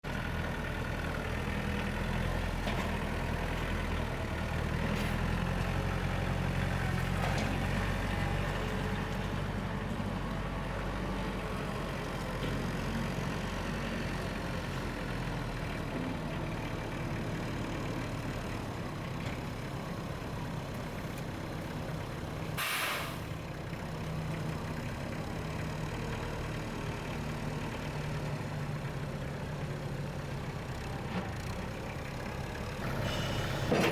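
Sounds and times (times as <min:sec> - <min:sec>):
tractor diesel engine running: 0:00.0 - 0:33.9
short hiss: 0:22.6 - 0:23.3.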